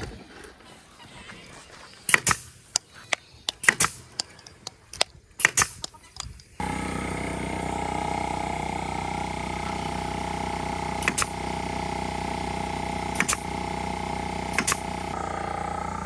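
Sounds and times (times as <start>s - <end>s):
sharp double clicks: 3.5s - 6.5s, 11.0s - 11.4s, 13.2s - 13.5s, 14.5s - 15.1s
steady mechanical hum: 6.6s - 16.0s.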